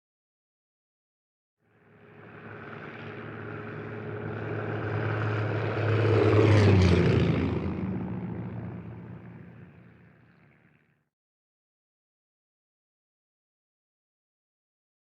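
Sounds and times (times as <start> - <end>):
propeller plane flying past: 1.6 - 11.1.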